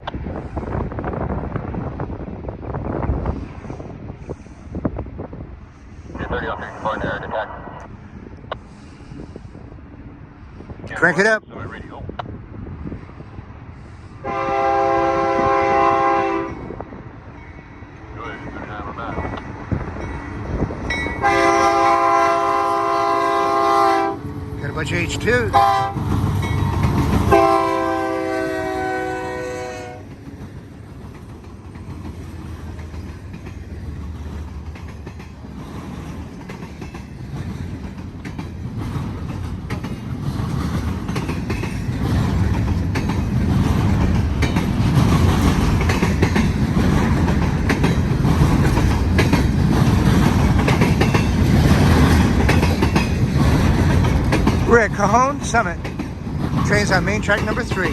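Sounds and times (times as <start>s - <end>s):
locomotive rumble: 0.0s - 57.9s
locomotive air horn chord: 14.2s - 16.6s, 21.2s - 24.3s, 25.5s - 26.0s, 27.3s - 30.1s
train wheels clicking on rails: 16.6s - 57.9s.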